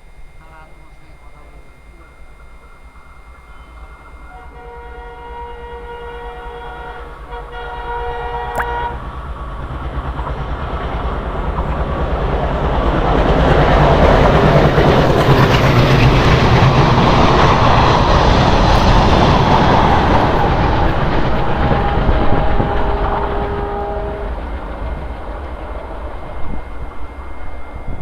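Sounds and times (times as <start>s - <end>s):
train horn chord: 3.5s - 9.2s, 18.6s - 25.2s
train rumbling and clattering past: 3.5s - 28.0s.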